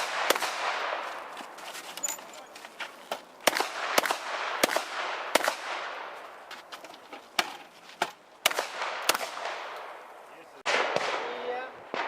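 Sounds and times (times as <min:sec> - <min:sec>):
shotgun shots with echo: 0:00.0 - 0:01.0, 0:03.4 - 0:06.1, 0:08.4 - 0:09.8, 0:10.6 - 0:12.0.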